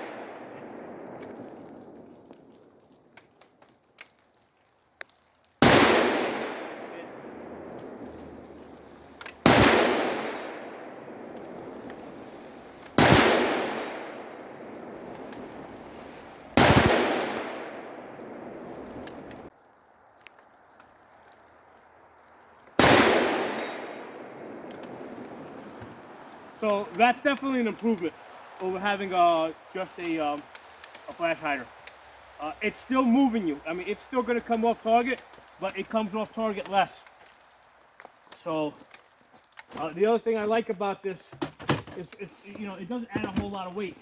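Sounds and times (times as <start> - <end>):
rifle shots echoing: 5.6 - 8.6, 9.4 - 12.3, 12.9 - 15.8, 16.6 - 19.2, 22.8 - 25.2.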